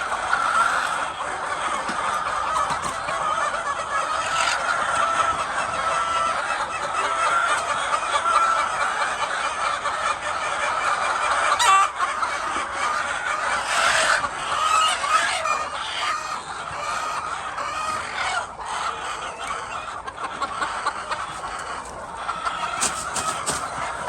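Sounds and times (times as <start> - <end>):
hens clucking: 0.0 - 24.0.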